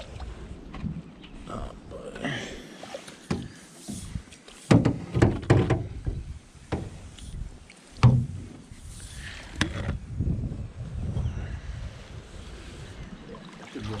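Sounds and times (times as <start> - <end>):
boat hull knocking and thumping: 3.3 - 7.0, 8.0 - 8.6.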